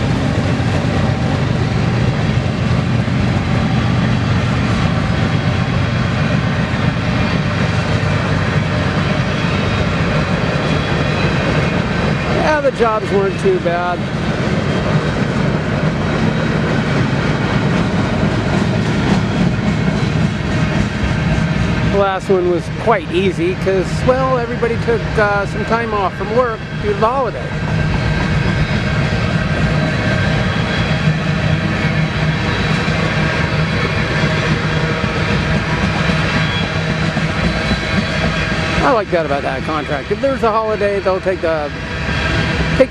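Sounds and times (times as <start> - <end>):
freight train rolling on rails: 0.0 - 42.9.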